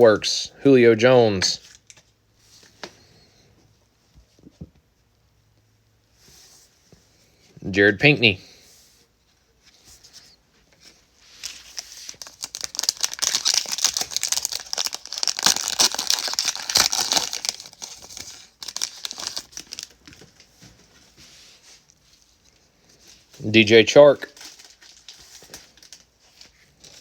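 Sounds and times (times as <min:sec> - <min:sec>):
foil wrapper crinkling and tearing: 0:11.2 - 0:20.4, 0:24.2 - 0:27.0.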